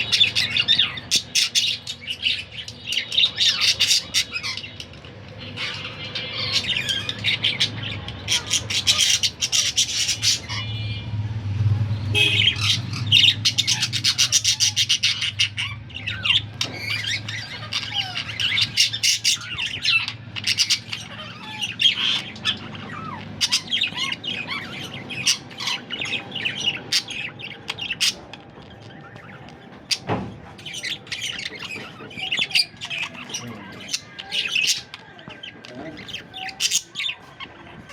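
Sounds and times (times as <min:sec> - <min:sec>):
budgerigars chattering: 0:00.0 - 0:11.0, 0:12.0 - 0:37.9
budgerigar squawks: 0:12.1 - 0:28.2.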